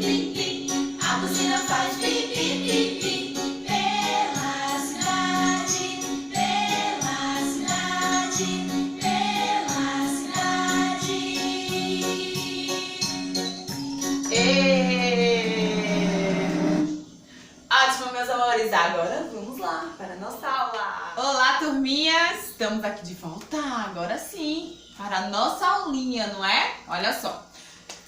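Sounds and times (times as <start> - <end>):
children's song singing: 0.0 - 17.1.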